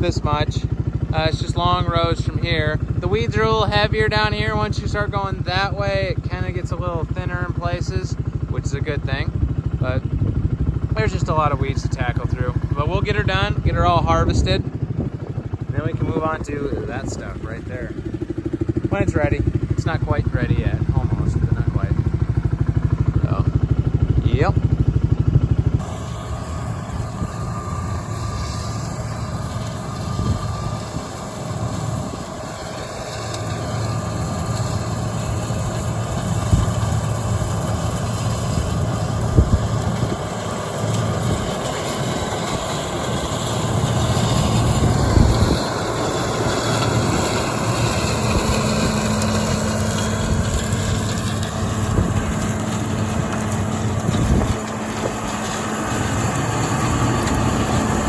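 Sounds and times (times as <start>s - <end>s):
farm vehicle engine rumbling: 0.0s - 58.0s
steady hum: 0.0s - 58.0s.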